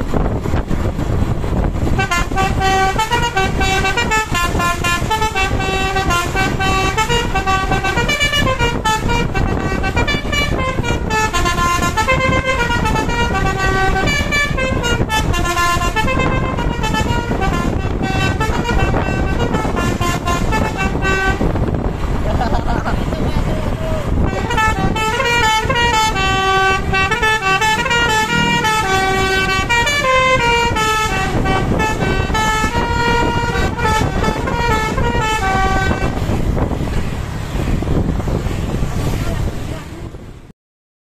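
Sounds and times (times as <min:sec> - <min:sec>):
bus engine rumble: 0:00.0 - 0:40.5
musical air horn playing a tune: 0:01.8 - 0:21.8, 0:24.2 - 0:36.6.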